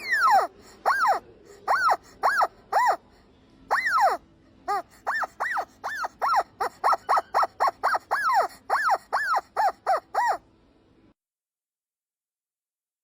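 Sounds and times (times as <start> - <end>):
squeaky dog toy squeaking: 0.0 - 3.0, 3.7 - 10.4.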